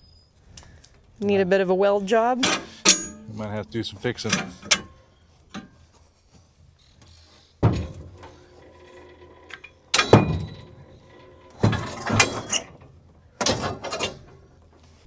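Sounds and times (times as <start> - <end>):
metal parts clanking in truck bed: 2.2 - 5.8, 7.6 - 14.8.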